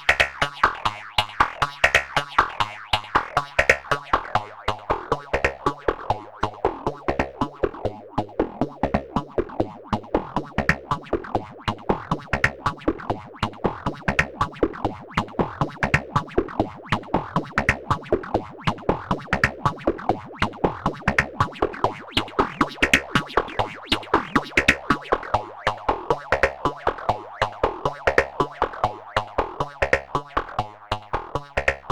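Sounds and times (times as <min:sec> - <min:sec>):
plucked synthesizer notes: 0:06.7 - 0:31.9.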